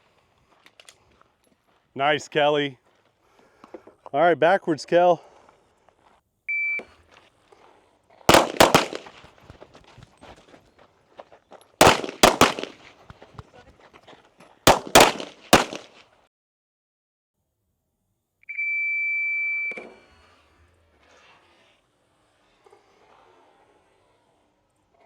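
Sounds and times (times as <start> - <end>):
gunshots with echo: 8.3 - 9.4, 11.8 - 13.0, 14.7 - 16.0.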